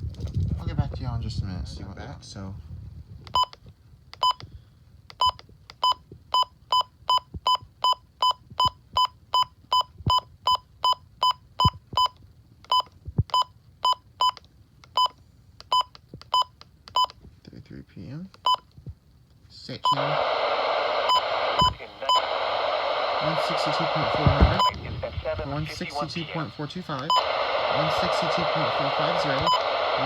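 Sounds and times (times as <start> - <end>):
electronic key-press beeps: 4.2 - 4.4.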